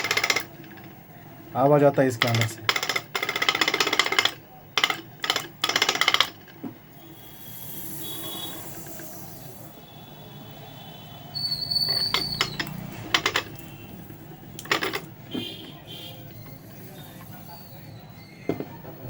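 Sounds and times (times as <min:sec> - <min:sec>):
ceiling fan running: 0:00.0 - 0:19.0
sharp clicks from fan motor: 0:02.0 - 0:06.6, 0:11.9 - 0:18.7
high thin squeal: 0:06.9 - 0:14.4, 0:15.3 - 0:18.6.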